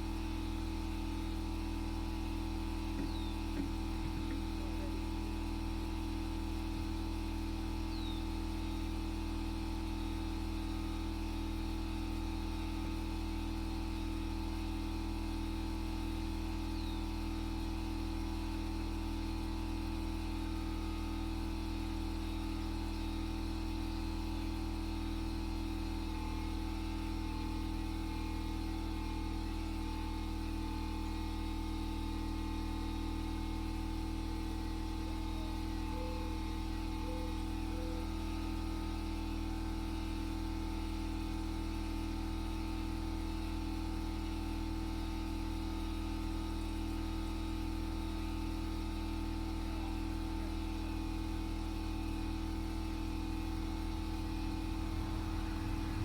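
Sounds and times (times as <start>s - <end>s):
machine motor humming: 0.0s - 9.5s, 20.1s - 40.4s, 51.0s - 56.0s
faint chirp: 3.0s - 4.9s, 7.8s - 8.4s.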